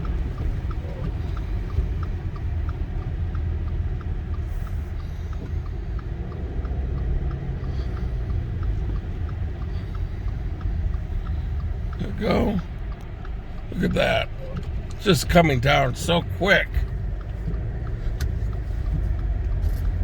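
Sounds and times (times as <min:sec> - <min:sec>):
car driving on snowy road: 0:00.0 - 0:20.0
faint light ticking: 0:00.0 - 0:20.0.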